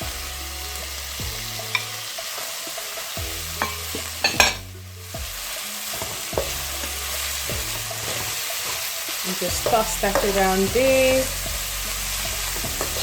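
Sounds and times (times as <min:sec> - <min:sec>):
vegetables sizzling in oil: 0:00.0 - 0:13.0
utensil knocking on wok: 0:03.2 - 0:05.3, 0:06.0 - 0:08.8, 0:09.5 - 0:13.0.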